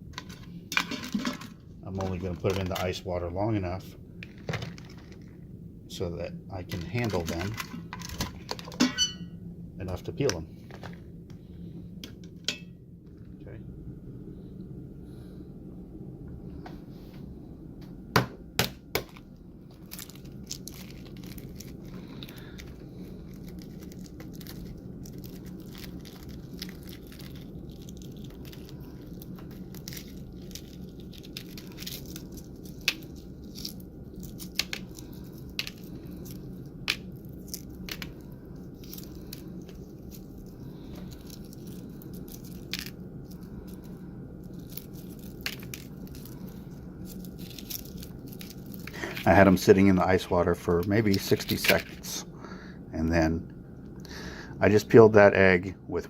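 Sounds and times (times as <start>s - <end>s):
eggshell cracking and crinkling: 0.0s - 3.0s, 4.2s - 5.5s, 6.6s - 8.8s, 18.8s - 52.1s
steady low hum: 0.0s - 56.0s.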